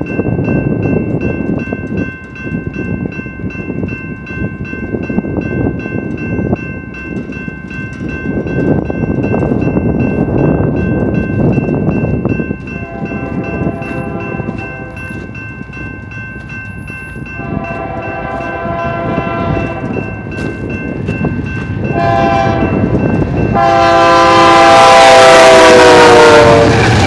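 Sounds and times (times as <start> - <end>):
rapid steady ringing: 0.0 - 24.1
freight train wheels rumbling: 0.0 - 27.0
train horn: 12.8 - 15.2, 17.4 - 20.1, 21.9 - 27.0.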